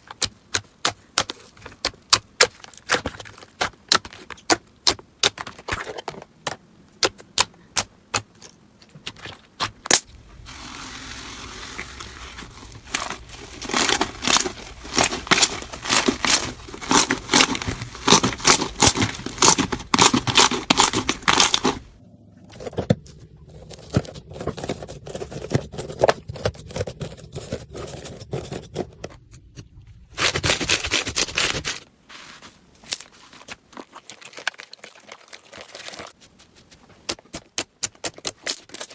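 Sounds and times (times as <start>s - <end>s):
slime crackling: 10.0s - 21.9s.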